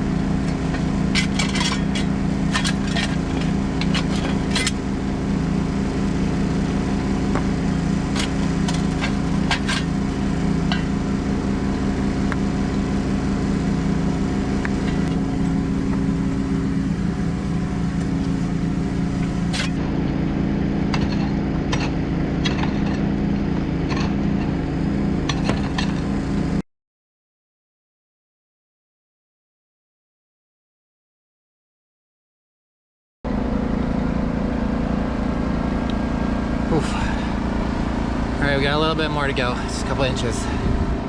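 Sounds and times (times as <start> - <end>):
jackhammer hammering rock: 0.0 - 16.2, 17.3 - 26.6.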